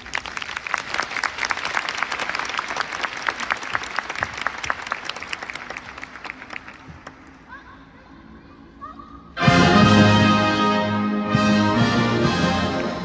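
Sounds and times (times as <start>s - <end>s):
audience applauding: 0.0s - 7.4s.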